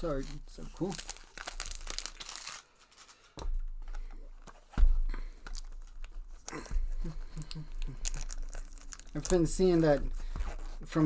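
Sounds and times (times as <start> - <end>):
cards and foil wrappers rustling: 0.0 - 11.0
dull thump: 4.7 - 5.3.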